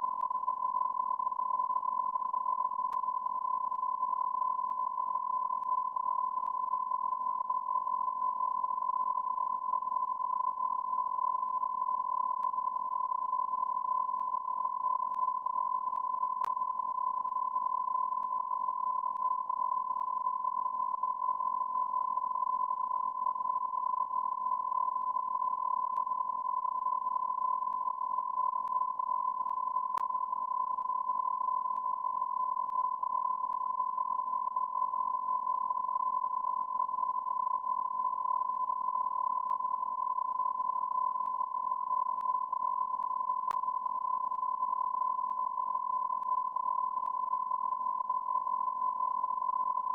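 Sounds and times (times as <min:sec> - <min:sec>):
faint clicks: 0:29.4 - 0:30.1, 0:42.2 - 0:43.6.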